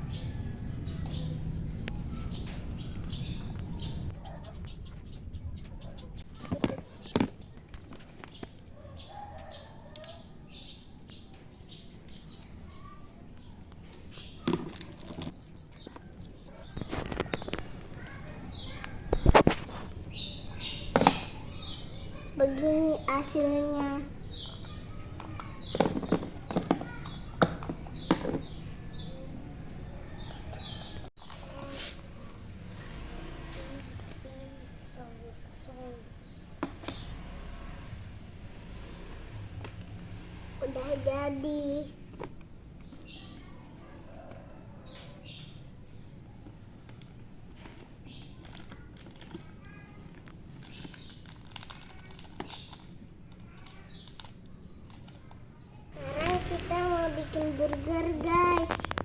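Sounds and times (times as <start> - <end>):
birds chirping: 0.0 - 37.3, 42.6 - 46.8.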